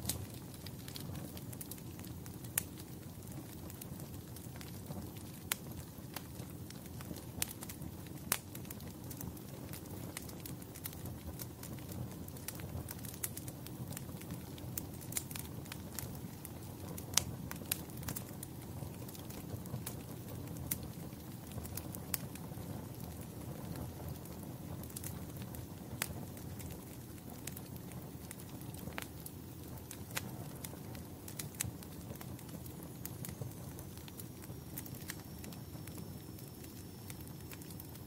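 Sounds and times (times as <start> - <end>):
low rumble of burning logs: 0.0 - 38.0
wood fire crackling and popping: 0.0 - 38.0.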